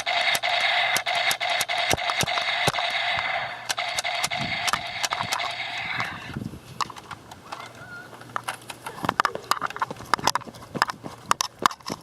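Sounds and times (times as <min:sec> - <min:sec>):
toy blaster motor whine: 0:00.0 - 0:06.3
sharp firing clicks: 0:00.0 - 0:06.4.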